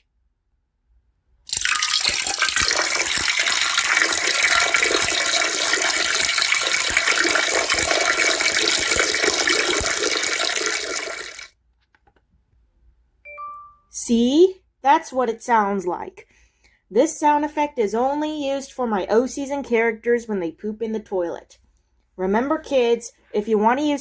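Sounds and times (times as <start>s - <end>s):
urine stream into toilet water: 1.5s - 11.5s.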